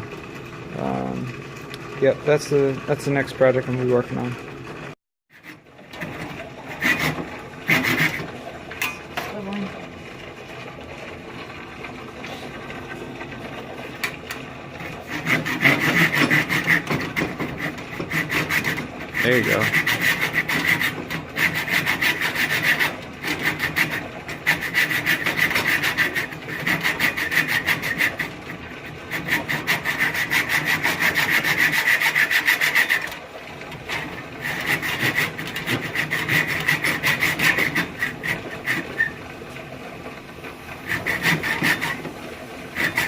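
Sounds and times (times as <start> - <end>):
saw cutting wood: 5.3 - 8.4, 14.8 - 33.2, 33.9 - 39.2, 40.7 - 43.0.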